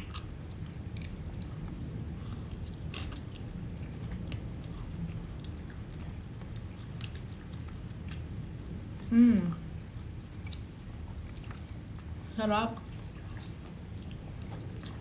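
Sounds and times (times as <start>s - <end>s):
person chewing spaghetti: 0.0s - 15.0s.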